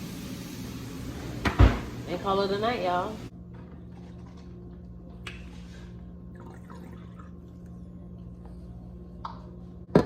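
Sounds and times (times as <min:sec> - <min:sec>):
steady low hum: 0:03.2 - 0:09.9.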